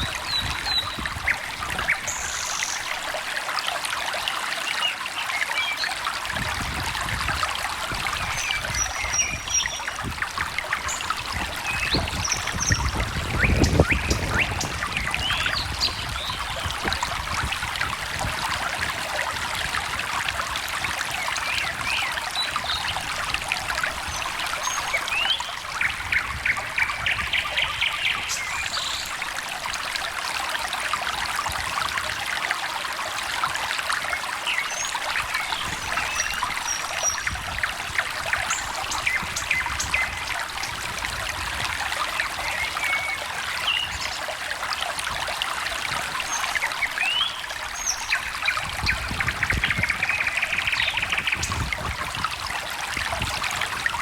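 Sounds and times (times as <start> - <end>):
stream trickling and babbling: 0.0 - 54.0
songbirds chirping: 8.4 - 16.9, 46.1 - 51.6.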